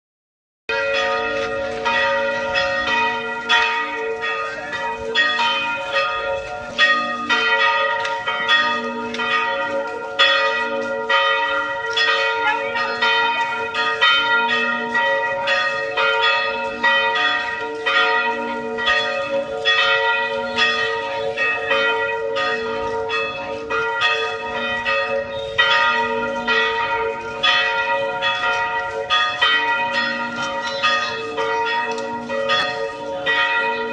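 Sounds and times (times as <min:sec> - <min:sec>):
church bells pealing: 0:00.7 - 0:33.9.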